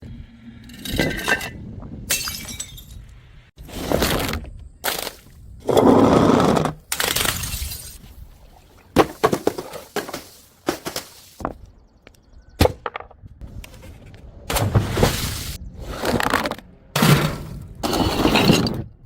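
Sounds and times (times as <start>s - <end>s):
glass bottles smashing: 2.1s - 3.0s.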